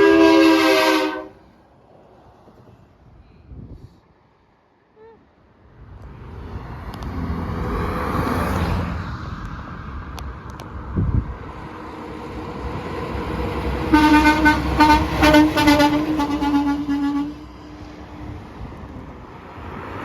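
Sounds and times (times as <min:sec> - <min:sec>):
truck air horn blasts: 0:00.0 - 0:01.5, 0:13.9 - 0:17.7
vehicle road noise: 0:00.0 - 0:20.0.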